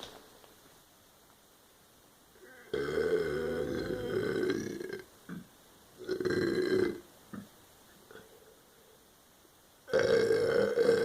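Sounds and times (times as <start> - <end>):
person burping loudly: 2.4 - 7.5, 9.9 - 11.0.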